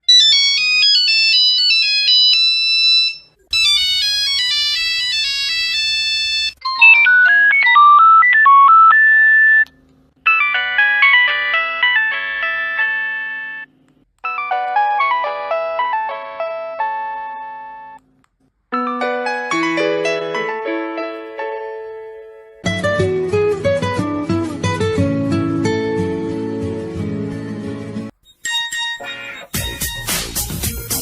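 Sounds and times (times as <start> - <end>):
mobile phone ringtone melodies: 0.1 - 9.6, 10.2 - 18.0, 18.8 - 21.5, 28.2 - 30.1.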